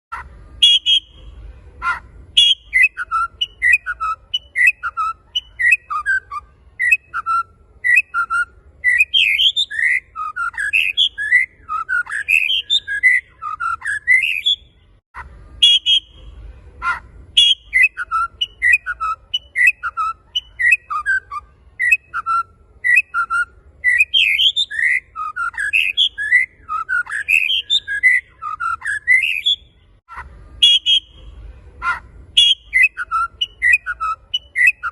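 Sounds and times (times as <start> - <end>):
bird singing whistled notes: 0.2 - 14.7, 15.6 - 16.2, 16.8 - 29.8, 30.6 - 34.9.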